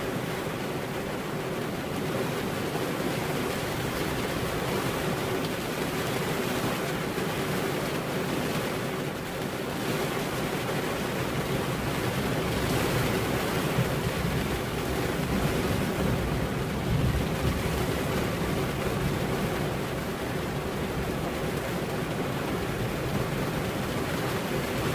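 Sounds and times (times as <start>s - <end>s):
steady rain: 0.0s - 24.9s
low rumble of thunder: 12.9s - 21.5s.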